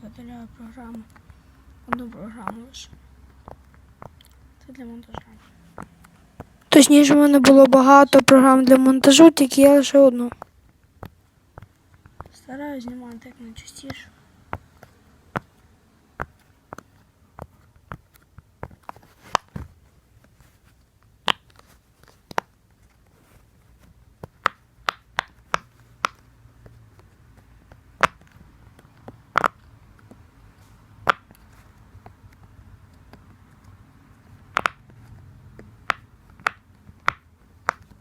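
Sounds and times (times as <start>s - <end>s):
tapping on silicone toy: 1.0s - 4.3s, 21.2s - 22.6s, 24.2s - 30.2s, 31.0s - 33.7s, 34.4s - 38.0s.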